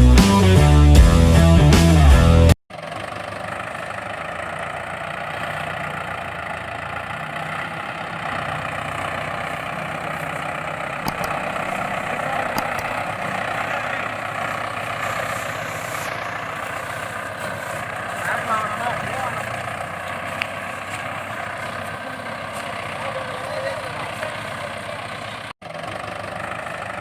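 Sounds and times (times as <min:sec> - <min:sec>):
toy tractor mechanical drone: 0:10.9 - 0:16.4.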